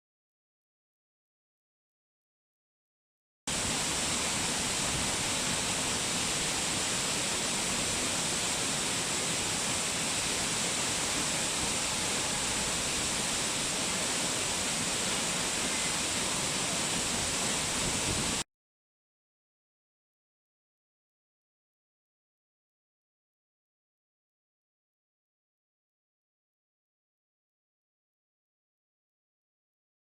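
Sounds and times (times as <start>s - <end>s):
waterfall roaring: 3.5s - 18.4s.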